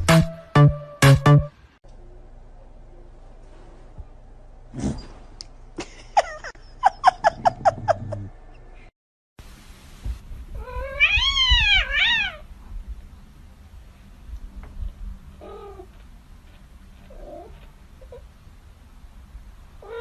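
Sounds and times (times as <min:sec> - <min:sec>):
cat meowing loudly: 0:10.6 - 0:12.5.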